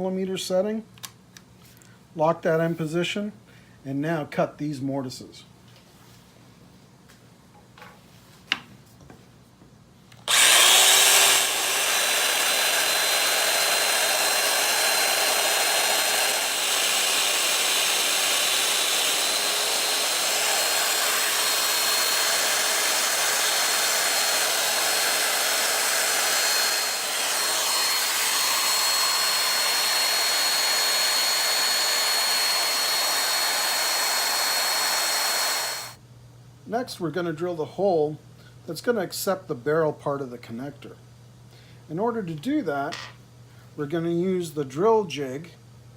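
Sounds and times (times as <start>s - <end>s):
power joiner running with high whine: 10.2s - 36.0s.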